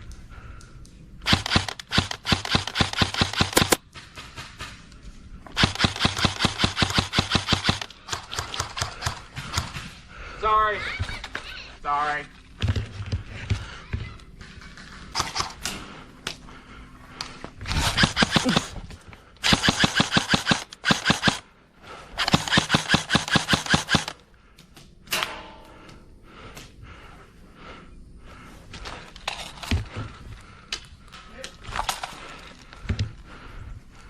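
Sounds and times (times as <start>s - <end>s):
airsoft gun full-auto bursts: 1.2s - 3.8s, 5.6s - 9.8s, 17.7s - 18.8s, 19.4s - 21.5s, 22.2s - 24.2s.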